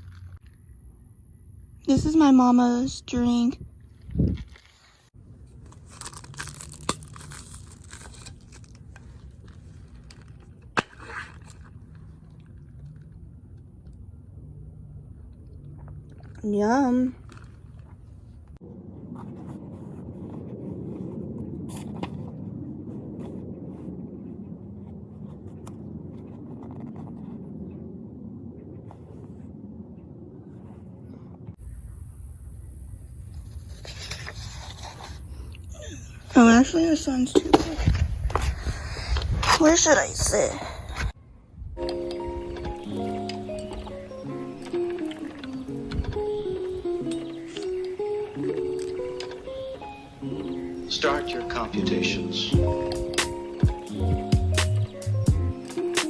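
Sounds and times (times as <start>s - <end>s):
low rumbling background noise: 0.0s - 44.5s
plastic cup crinkling: 4.0s - 13.3s
faint steady hum: 6.6s - 39.2s.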